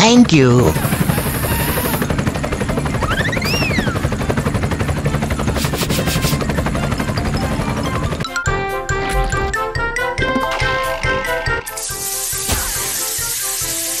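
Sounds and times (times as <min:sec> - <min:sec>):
helicopter rotor chopping: 0:00.0 - 0:08.2, 0:10.4 - 0:14.0
whistle-like tone: 0:03.2 - 0:03.9.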